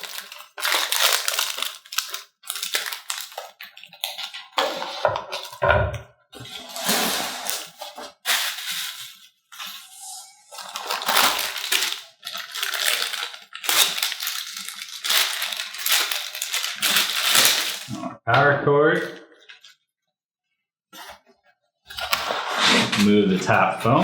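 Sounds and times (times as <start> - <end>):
packing material crinkling: 0.0 - 5.6, 6.5 - 18.0.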